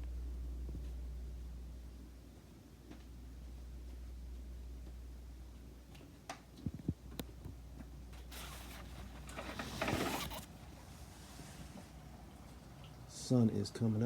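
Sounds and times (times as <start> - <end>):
door scraping: 8.2 - 10.7.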